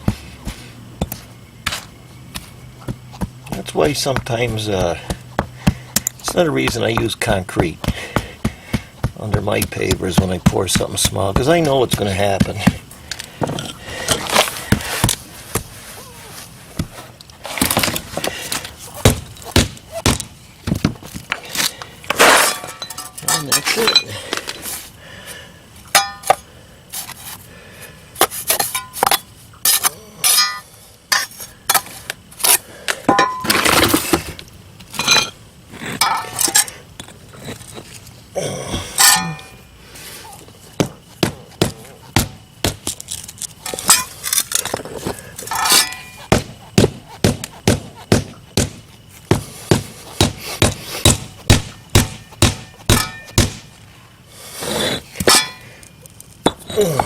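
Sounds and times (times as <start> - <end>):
rubber mallet thudding on pavers: 0.0 - 21.5, 40.7 - 43.1, 45.0 - 53.7, 56.4 - 57.0
pavers and tools clinking: 21.1 - 24.8, 25.9 - 26.4, 28.5 - 34.3, 34.9 - 38.1, 38.7 - 39.6, 42.9 - 46.2, 52.2 - 53.4, 55.2 - 57.0.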